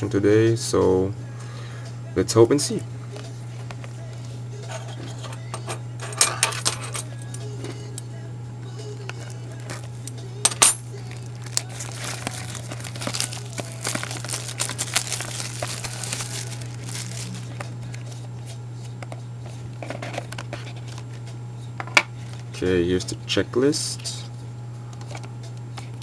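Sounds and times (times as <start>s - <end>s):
low electrical hum: 0.0s - 26.0s
plastic wrapping crinkling and tearing: 11.0s - 18.2s.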